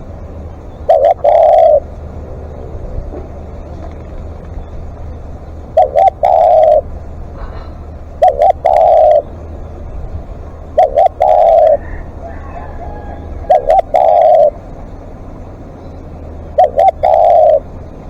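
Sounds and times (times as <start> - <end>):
dove cooing: 0.0 - 9.7, 10.3 - 15.2, 16.4 - 18.0
steady low hum: 0.0 - 18.0.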